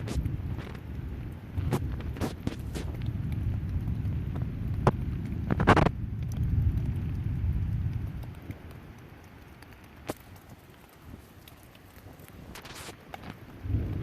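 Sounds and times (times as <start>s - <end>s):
thunder rumbling: 0.0s - 9.4s, 13.5s - 14.0s
thunder crackle: 0.0s - 11.2s, 12.4s - 14.0s.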